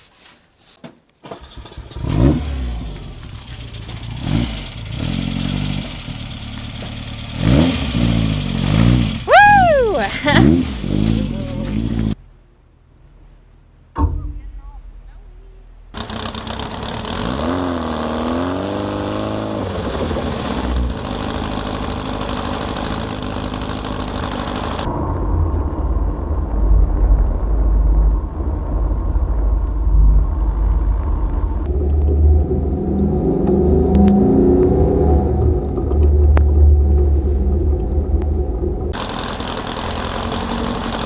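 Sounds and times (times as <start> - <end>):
car engine running: 1.4 - 12.2, 15.8 - 41.0
sharp knock: 13.9 - 14.5.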